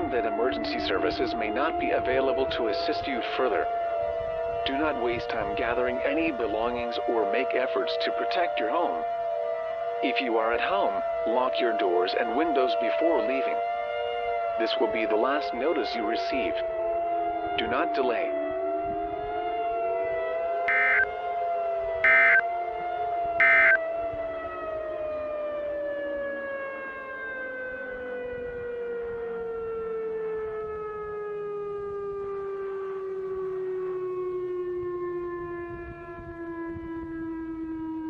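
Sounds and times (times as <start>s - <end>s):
siren winding down: 0.0s - 38.0s
loud data bursts: 20.7s - 21.1s, 22.0s - 22.4s, 23.4s - 23.8s.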